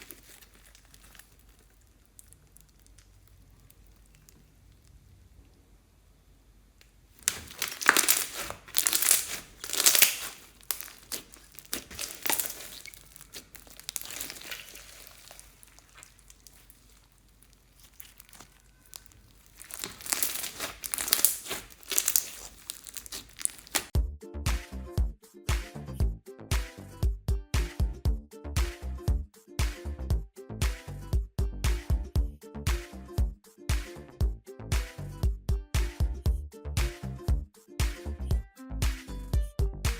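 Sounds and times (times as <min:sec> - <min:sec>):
slime squished by hand: 0:00.0 - 0:05.0, 0:07.2 - 0:24.0.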